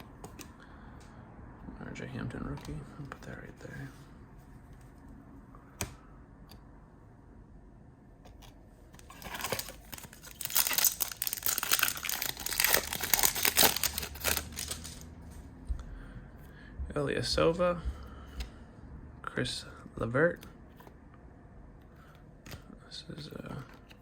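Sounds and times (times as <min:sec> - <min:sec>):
foil wrapper crinkling: 0:09.1 - 0:15.0.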